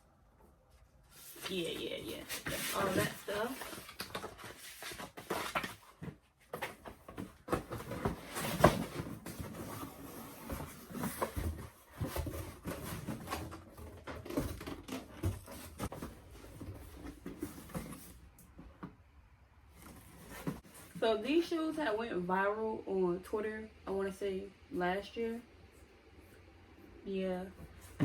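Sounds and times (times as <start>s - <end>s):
cardboard and paper rustling: 0.8s - 19.0s, 19.7s - 21.3s.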